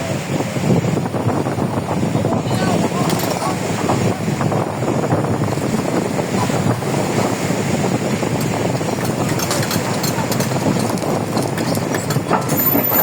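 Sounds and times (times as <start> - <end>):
diesel engine rumble: 0.0 - 13.0.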